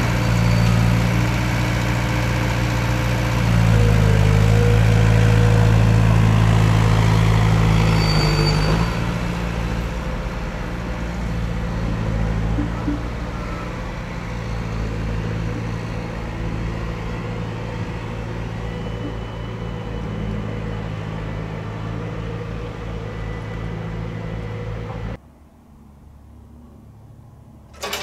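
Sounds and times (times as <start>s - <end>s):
diesel engine idling: 0.0s - 7.8s.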